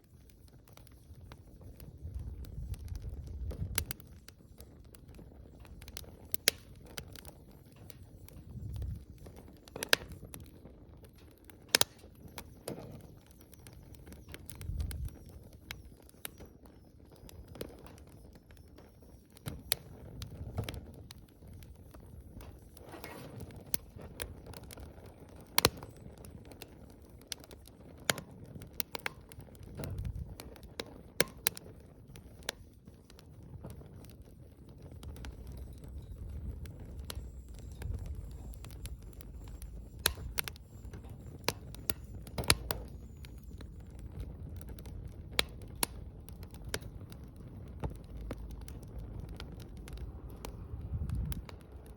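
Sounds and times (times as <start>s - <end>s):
bonfire crackling and popping: 0.0s - 51.9s
soft low rumble: 34.7s - 51.9s.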